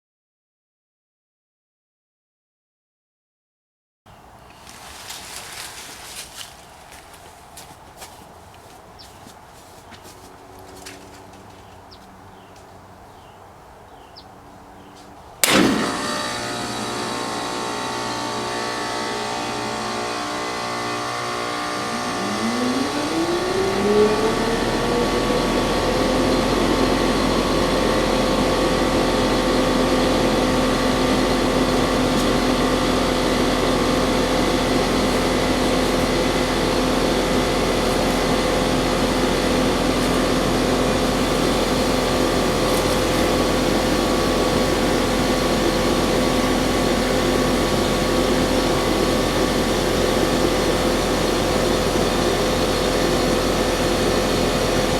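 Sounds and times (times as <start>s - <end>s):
heat pump hum and air rush: 4.2s - 54.9s
heat pump motor whine: 15.4s - 54.9s.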